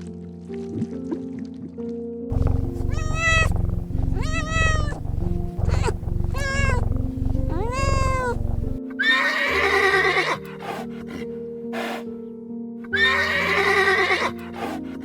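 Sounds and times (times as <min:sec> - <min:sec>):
background music: 0:00.0 - 0:15.0
cat meowing: 0:02.3 - 0:08.8
harsh animal call: 0:02.6 - 0:10.8.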